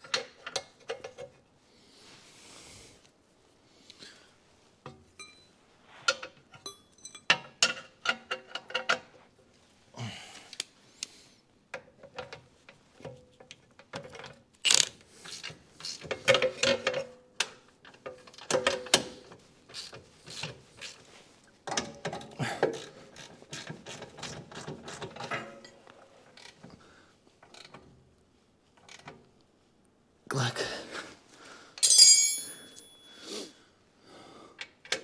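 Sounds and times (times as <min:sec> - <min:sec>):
metallic clinks of tools: 0:05.2 - 0:05.5, 0:06.6 - 0:07.4, 0:31.8 - 0:33.2
ratchet wrench clicking: 0:14.7 - 0:16.2, 0:19.7 - 0:21.0.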